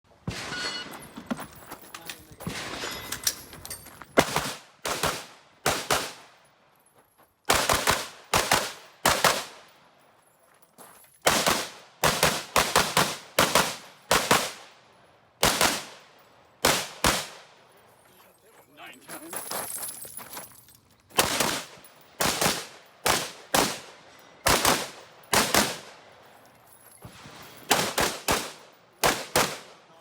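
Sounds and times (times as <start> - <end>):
rifle shots with echo: 0.2 - 0.9, 2.4 - 3.2, 4.2 - 6.4, 7.5 - 9.7, 11.3 - 14.8, 15.4 - 17.6, 21.2 - 26.1, 27.1 - 29.9
rustling handling noise: 17.8 - 21.2.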